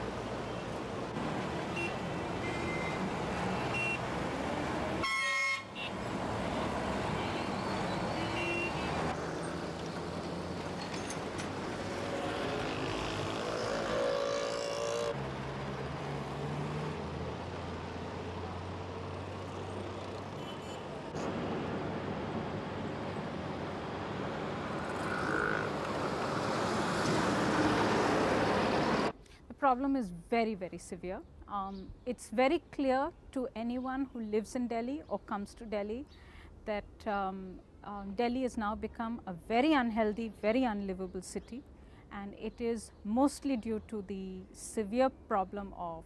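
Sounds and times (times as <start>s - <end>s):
car horns honking: 1.7s - 4.0s, 4.9s - 6.1s, 7.0s - 9.1s, 20.4s - 21.0s
vehicle engines running: 5.9s - 29.1s.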